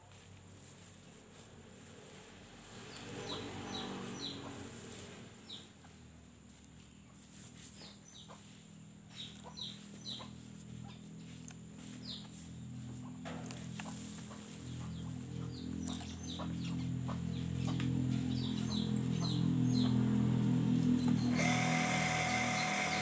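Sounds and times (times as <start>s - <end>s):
chickens clucking: 2.9s - 23.0s.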